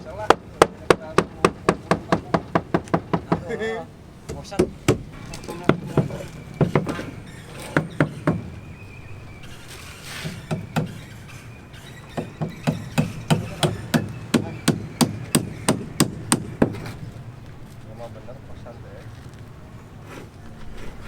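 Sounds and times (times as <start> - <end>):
hammer strikes: 0.2 - 3.5, 4.3 - 8.6, 10.2 - 11.1, 12.2 - 17.0.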